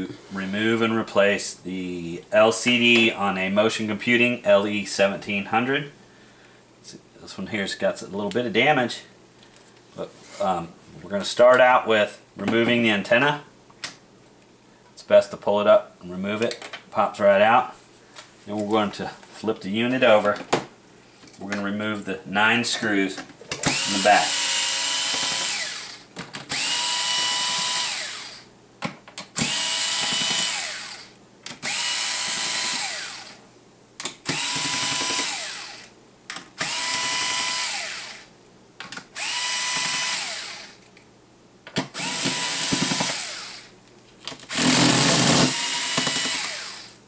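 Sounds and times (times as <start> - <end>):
powered screwdriver whirring: 23.6 - 28.4, 29.4 - 33.4, 34.2 - 35.9, 36.6 - 38.3, 39.2 - 40.8, 41.8 - 43.7, 44.5 - 47.0.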